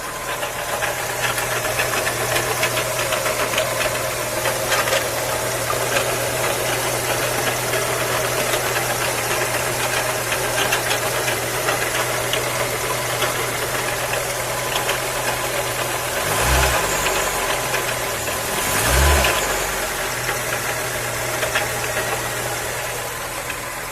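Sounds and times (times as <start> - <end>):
car engine idling: 0.0 - 23.9
car engine revving: 0.0 - 23.9.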